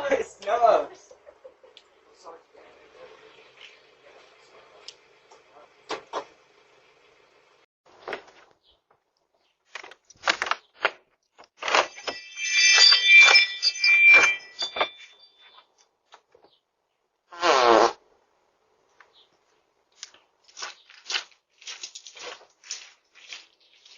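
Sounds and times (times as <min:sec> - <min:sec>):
thin whistling tone: 0:12.0 - 0:15.6
person farting: 0:17.3 - 0:18.0.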